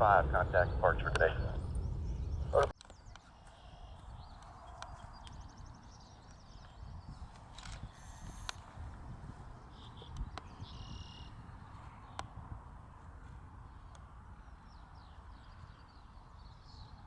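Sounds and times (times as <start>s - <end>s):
wind on microphone: 0.0s - 17.0s
bird-like chirps: 9.7s - 12.2s.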